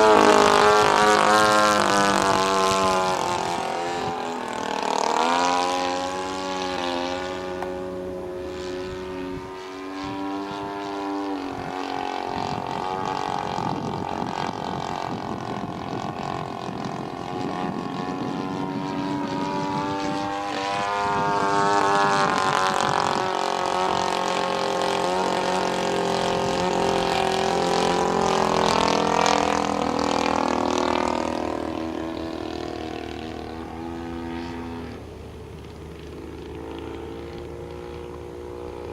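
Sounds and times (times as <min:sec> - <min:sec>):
model airplane engine passing: 0:00.0 - 0:38.9.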